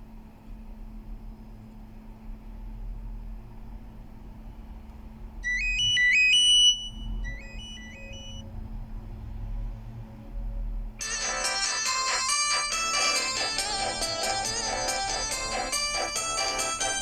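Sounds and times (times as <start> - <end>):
steady low hum: 0.0 - 17.0
phone ringtone rising notes: 5.4 - 8.4, 11.0 - 17.0.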